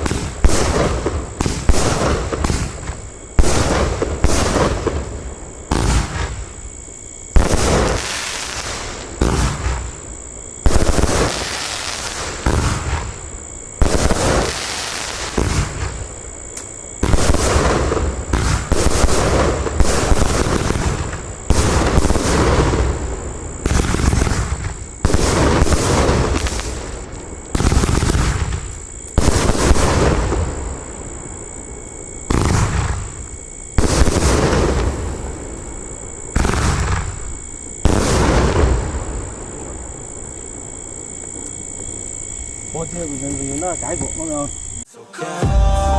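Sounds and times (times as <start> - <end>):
firework bangs: 0.0 - 10.0, 10.6 - 16.1, 17.0 - 30.8, 32.2 - 39.9.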